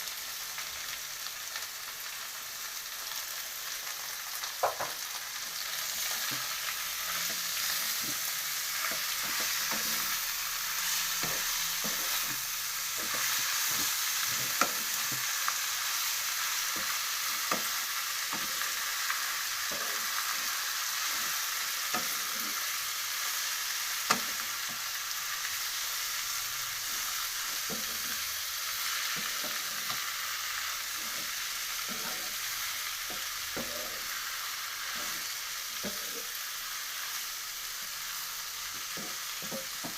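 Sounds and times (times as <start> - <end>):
food sizzling in a pan: 0.0 - 39.9
utensil scraping a pan: 7.1 - 10.4, 11.0 - 15.3, 30.9 - 34.2, 34.8 - 36.3.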